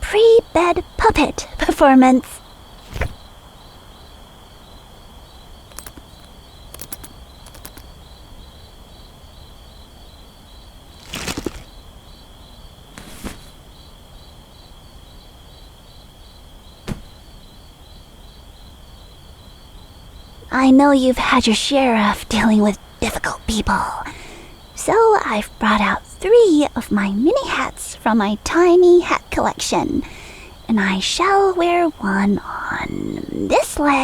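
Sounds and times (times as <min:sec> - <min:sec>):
crickets chirping: 0:00.0 - 0:34.0
handling rustles and clicks: 0:05.7 - 0:07.9, 0:11.0 - 0:11.7.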